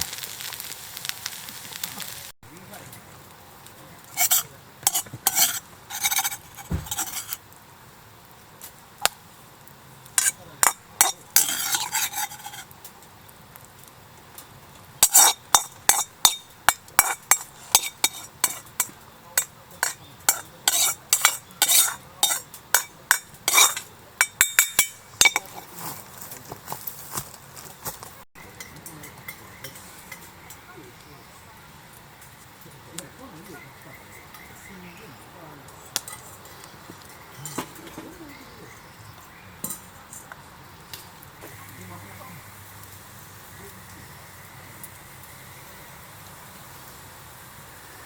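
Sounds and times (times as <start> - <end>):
metal utensil clinking on pan: 4.1 - 7.4, 10.2 - 12.7, 15.0 - 25.7, 28.5 - 30.6, 35.8 - 38.1, 39.6 - 40.3.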